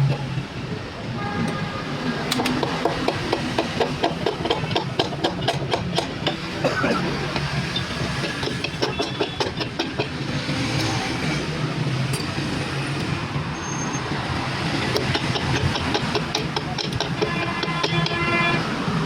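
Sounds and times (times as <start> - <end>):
metallic clicks and taps: 14.9 - 18.2.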